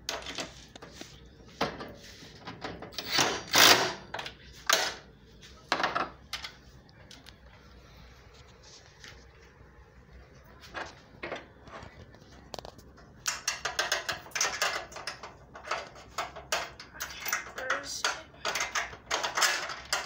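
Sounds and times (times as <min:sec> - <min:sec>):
metal tools clattering: 0:13.3 - 0:20.0.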